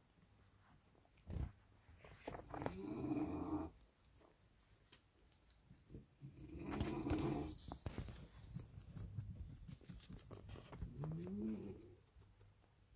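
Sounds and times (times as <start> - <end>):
light clicks and scratching: 3.6 - 6.0, 6.6 - 12.9.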